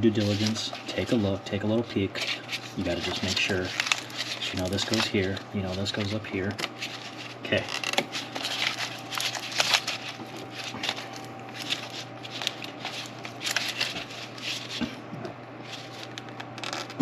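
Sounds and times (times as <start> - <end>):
steady low hum: 0.0 - 17.0
clicks and rustling of hands: 2.2 - 17.0.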